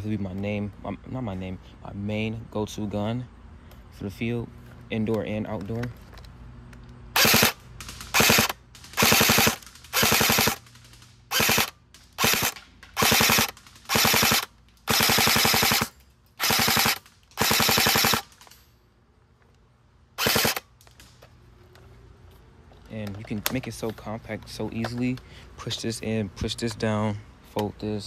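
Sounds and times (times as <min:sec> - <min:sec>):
airsoft gun full-auto bursts: 0:07.2 - 0:18.4, 0:20.2 - 0:20.7.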